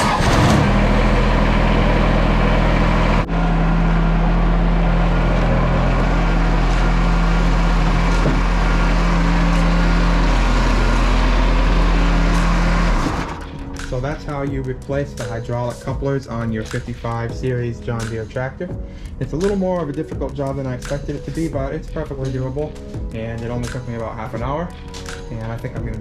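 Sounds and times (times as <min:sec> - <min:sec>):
tractor diesel engine running: 0:00.0 - 0:14.9.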